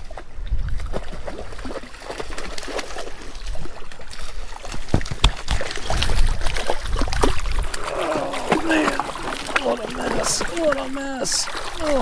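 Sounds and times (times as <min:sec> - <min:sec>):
stream water running: 0:00.0 - 0:12.0
water splashing: 0:00.8 - 0:12.0
small knocks: 0:04.7 - 0:06.0.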